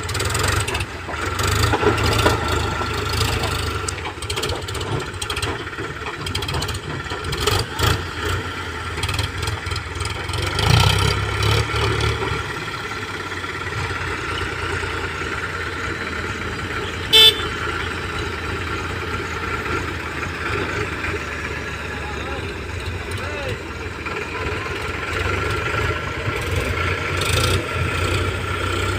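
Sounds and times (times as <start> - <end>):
tractor engine running: 0.0 - 28.9
vehicle horn toot: 16.8 - 17.9.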